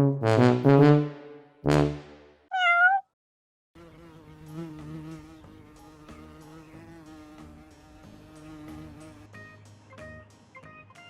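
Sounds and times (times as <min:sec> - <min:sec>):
brass fanfare: 0:00.0 - 0:02.3
cat meowing: 0:02.5 - 0:03.1
buzzing hum: 0:03.8 - 0:09.2.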